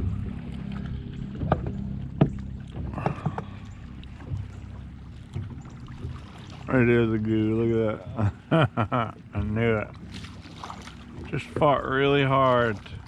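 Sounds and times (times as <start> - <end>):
low mechanical hum: 0.0 - 13.0
sharp knocks and clicks: 1.4 - 3.5.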